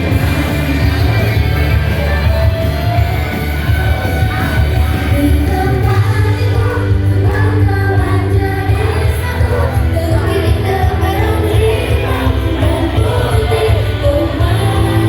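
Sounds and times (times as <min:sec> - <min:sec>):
heavy bass: 0:00.0 - 0:15.0
live pop-rock band: 0:00.0 - 0:15.0
person singing: 0:03.8 - 0:15.0.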